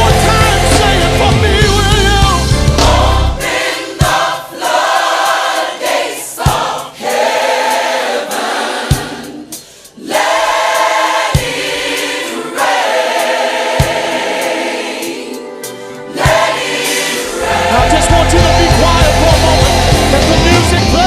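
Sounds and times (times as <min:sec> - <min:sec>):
deep bass accompaniment: 0:00.0 - 0:03.4, 0:17.3 - 0:21.0
gospel choir singing: 0:00.0 - 0:21.0.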